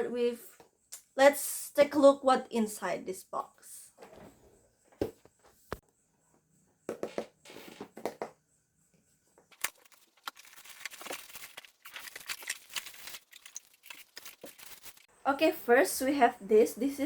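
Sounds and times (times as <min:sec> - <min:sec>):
packaging rustling and crinkling: 0:09.5 - 0:15.1.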